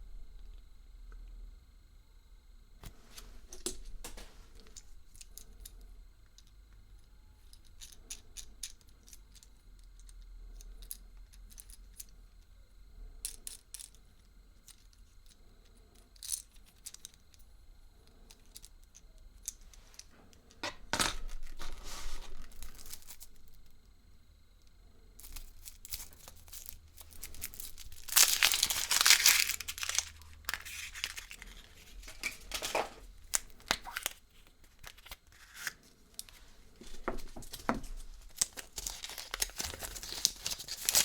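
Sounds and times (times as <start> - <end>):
crinkling and rustling: 19.6 - 23.8, 25.2 - 41.0.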